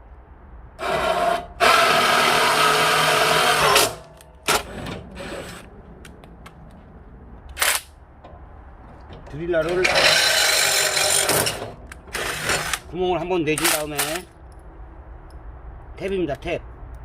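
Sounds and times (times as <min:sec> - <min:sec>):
power drill boring a hole: 0:00.8 - 0:04.0.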